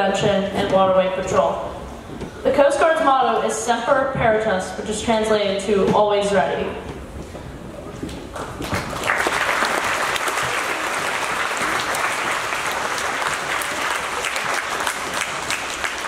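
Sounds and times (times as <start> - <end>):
audience applauding: 8.3 - 16.0.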